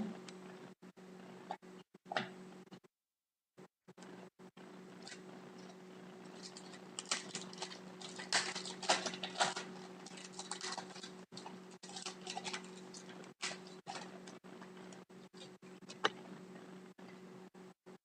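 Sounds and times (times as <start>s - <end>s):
steady low hum: 3.9s - 17.8s.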